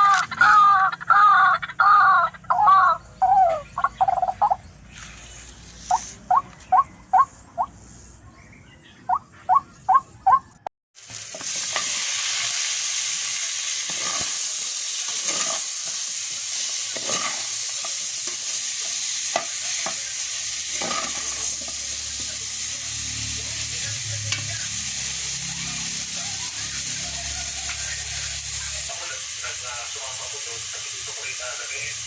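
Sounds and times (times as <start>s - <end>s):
quick rising chirps: 3.2s - 8.1s
food sizzling in hot oil: 10.9s - 32.0s.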